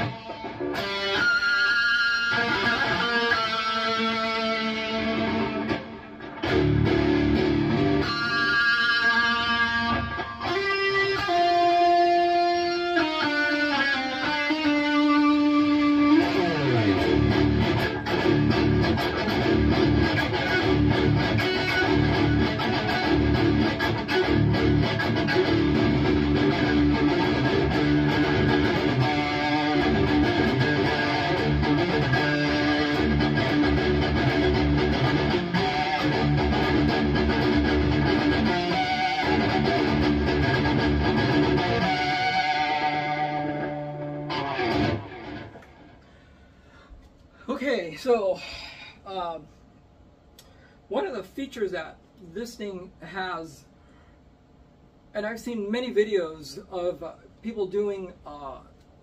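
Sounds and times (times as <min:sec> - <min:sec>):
distorted electric guitar: 0:00.0 - 0:46.1.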